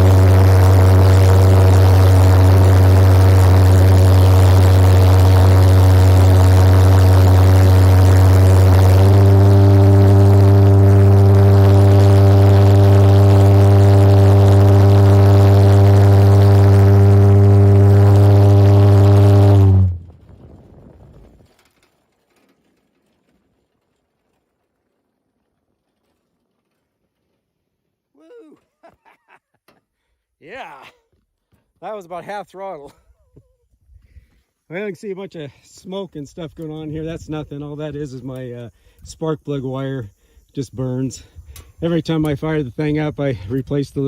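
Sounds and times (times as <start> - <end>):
pulsejet engine buzzing drone: 0.0 - 20.2
faint rumble: 0.0 - 28.0.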